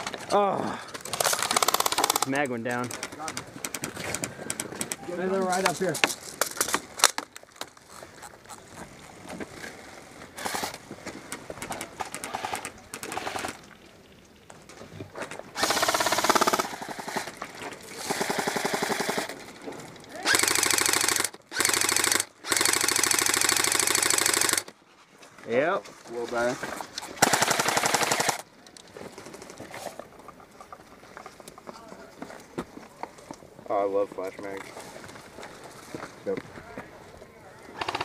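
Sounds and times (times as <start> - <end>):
airsoft gun firing full auto: 1.1 - 2.4, 15.6 - 17.3, 18.0 - 19.4, 20.2 - 24.7, 27.2 - 28.4, 37.8 - 38.0.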